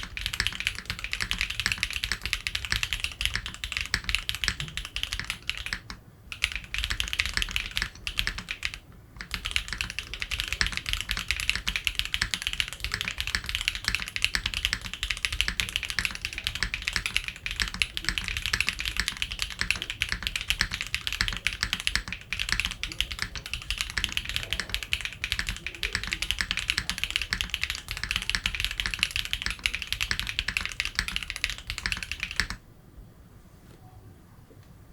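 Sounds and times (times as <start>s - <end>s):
mechanical keyboard key clacks: 0.0s - 32.6s.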